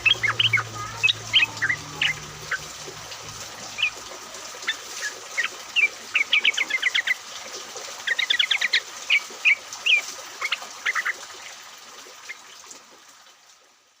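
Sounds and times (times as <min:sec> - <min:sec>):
rain hissing: 0:00.0 - 0:06.7
bird chirps and trills: 0:00.0 - 0:07.2.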